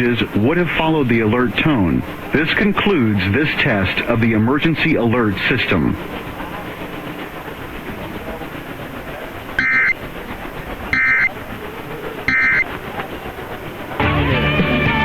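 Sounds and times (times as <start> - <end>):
radio static hiss: 0.0 - 13.1
short data tone bursts: 9.6 - 10.0, 10.9 - 11.3, 12.3 - 12.7
music: 14.0 - 15.0.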